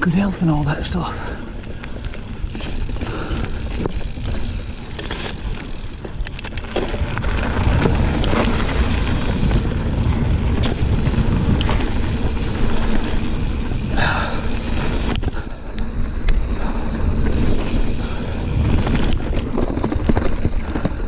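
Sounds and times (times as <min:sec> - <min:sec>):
bike clicking and rattling: 0:00.0 - 0:21.0
bike tyres rolling on dirt: 0:00.0 - 0:21.0
wind rumble on microphone: 0:01.5 - 0:21.0.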